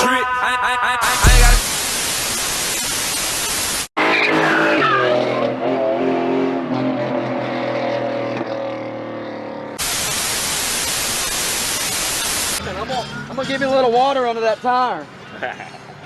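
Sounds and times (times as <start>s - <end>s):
static hiss: 1.1s - 3.9s, 9.8s - 12.6s
car engine at high revs: 4.0s - 9.9s.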